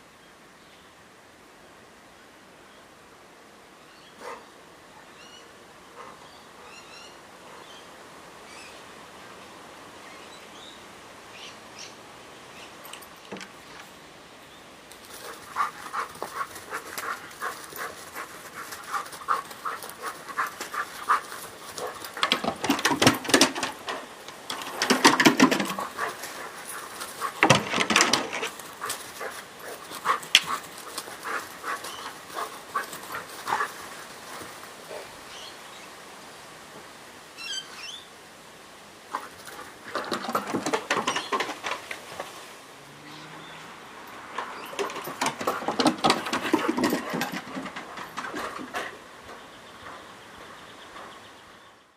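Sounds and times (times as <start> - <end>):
dog panting: 15.2 - 22.2, 28.4 - 35.1.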